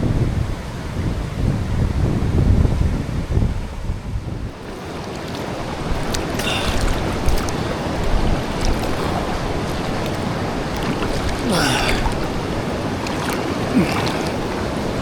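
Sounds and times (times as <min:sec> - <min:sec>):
wind buffeting microphone: 0:00.0 - 0:04.8, 0:05.5 - 0:15.0
rushing creek water: 0:04.5 - 0:15.0.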